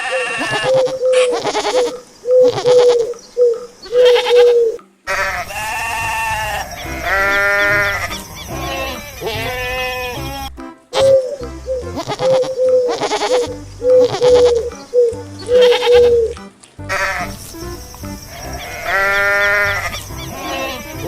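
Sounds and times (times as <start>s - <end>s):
goats bleating: 0.0s - 1.9s, 4.0s - 11.1s, 12.0s - 14.6s, 15.6s - 16.2s, 18.0s - 21.0s.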